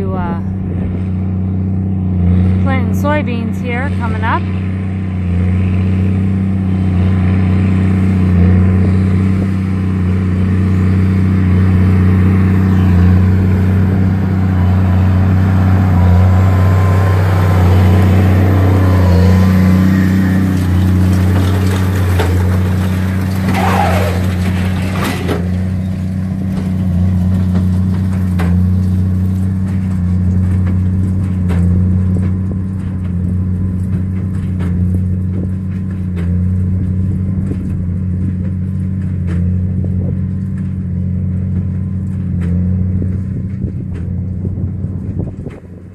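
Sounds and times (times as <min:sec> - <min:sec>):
tractor engine droning: 0:00.0 - 0:45.9
loud scraping noise: 0:11.8 - 0:29.7.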